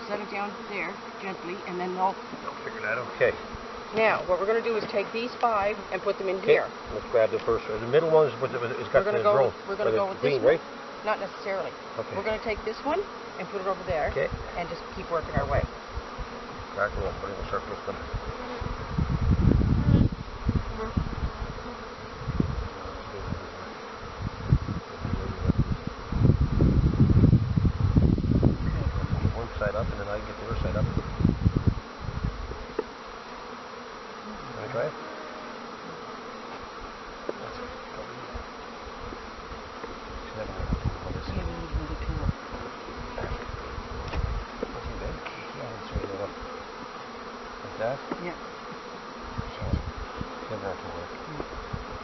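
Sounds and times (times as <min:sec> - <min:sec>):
honeybees buzzing: 0:00.0 - 0:52.0
microphone rumbles: 0:14.0 - 0:32.9, 0:38.1 - 0:46.4, 0:49.3 - 0:52.0.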